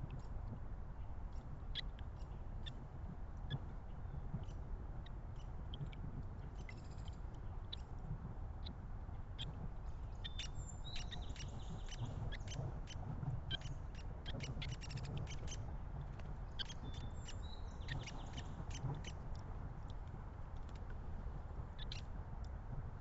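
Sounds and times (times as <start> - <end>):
steady low rumble: 1.2 - 23.0
small birds chirping: 9.4 - 15.6, 16.5 - 19.2.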